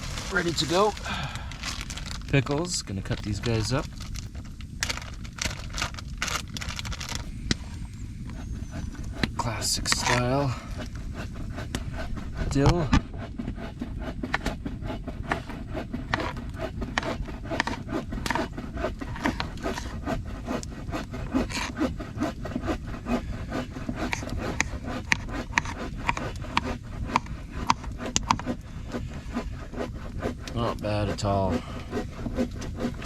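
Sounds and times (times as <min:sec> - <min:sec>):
knife chopping on cutting board: 0:16.1 - 0:19.9.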